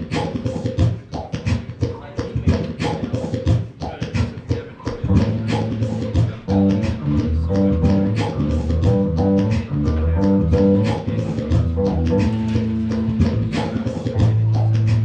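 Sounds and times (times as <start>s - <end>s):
bass guitar riff: 5.0s - 5.8s, 6.4s - 15.0s
quick percussive hits: 10.6s - 15.0s
guitar riff: 11.7s - 14.5s.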